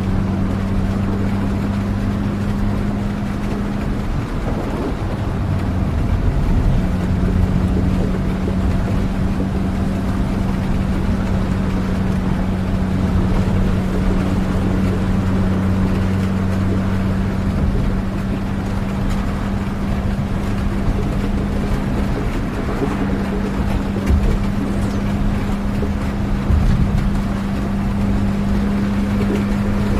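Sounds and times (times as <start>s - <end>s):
steady rain: 0.0s - 29.9s
vehicle engine hum: 0.0s - 29.9s.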